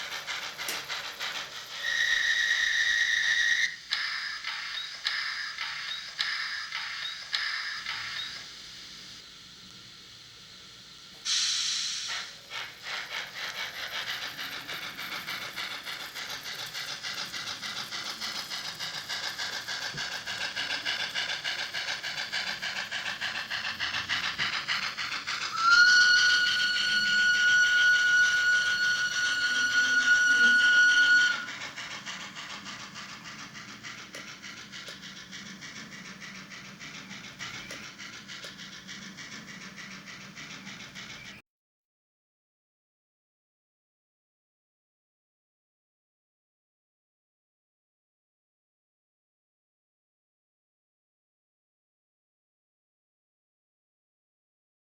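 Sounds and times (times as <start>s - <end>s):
steam hiss: 0.0s - 39.3s
steam locomotive chuffing: 0.0s - 41.4s
steam whistle: 1.8s - 3.8s, 11.3s - 12.2s, 25.4s - 31.6s.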